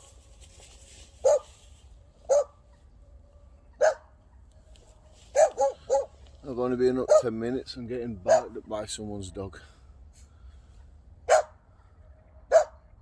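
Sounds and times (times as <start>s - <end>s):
dog barking: 1.2s - 1.6s, 2.2s - 2.6s, 3.8s - 4.2s, 5.3s - 6.2s, 7.0s - 7.4s, 8.2s - 8.6s, 11.2s - 11.6s, 12.4s - 12.9s.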